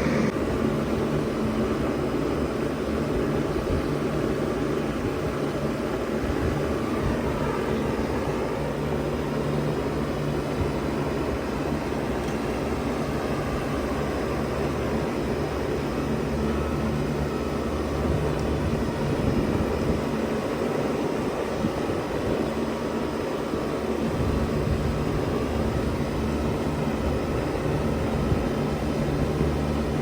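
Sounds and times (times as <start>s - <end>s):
low compressor hum: 0.0s - 5.4s
fan rushing: 0.0s - 22.5s, 23.5s - 30.0s.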